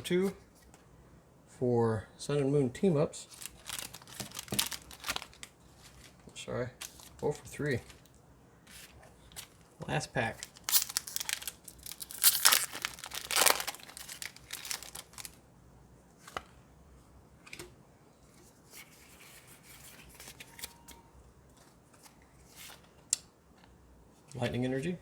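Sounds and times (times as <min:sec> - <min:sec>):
foil wrapper tearing and crinkling: 0:03.4 - 0:06.1, 0:10.2 - 0:15.4.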